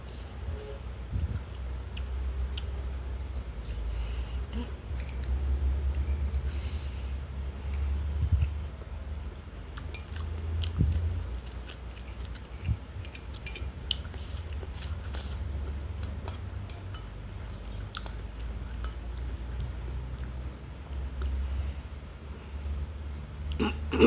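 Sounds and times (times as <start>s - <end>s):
steady low hum: 0.0s - 24.0s
cutlery clinking: 6.0s - 6.3s, 12.0s - 13.7s, 16.0s - 18.2s
person chewing with mouth clicks: 21.1s - 21.4s.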